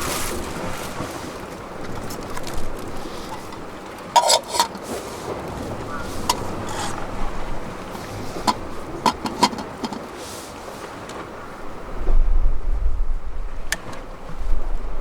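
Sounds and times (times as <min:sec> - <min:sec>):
sharp knocks and clicks: 0:08.4 - 0:10.1.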